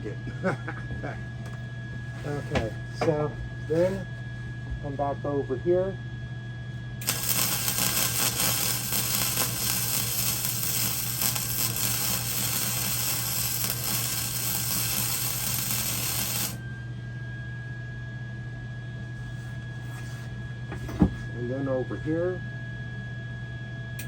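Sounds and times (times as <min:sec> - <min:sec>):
arc welding crackling sizzle: 0:07.0 - 0:16.6.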